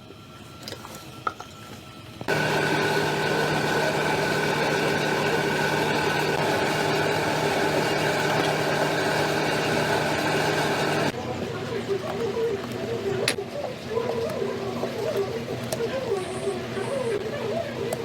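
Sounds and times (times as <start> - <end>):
machine humming and whining: 2.3 - 11.2.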